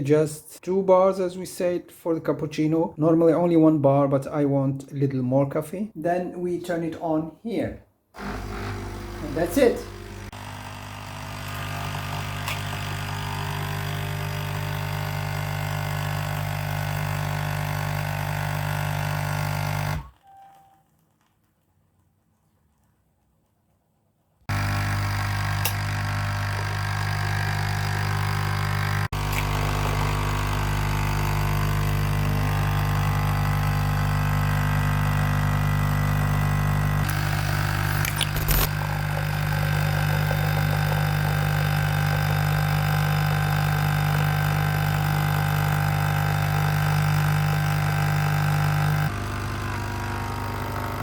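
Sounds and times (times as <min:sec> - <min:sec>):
coffee machine pump humming: 0:08.2 - 0:20.4, 0:24.5 - 0:51.0.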